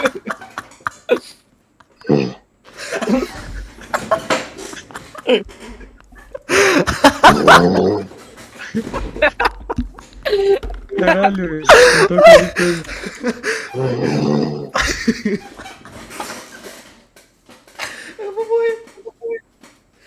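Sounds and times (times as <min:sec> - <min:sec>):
stifled breathy laughter: 0:00.0 - 0:16.9
person snoring: 0:02.0 - 0:02.4, 0:13.5 - 0:14.8.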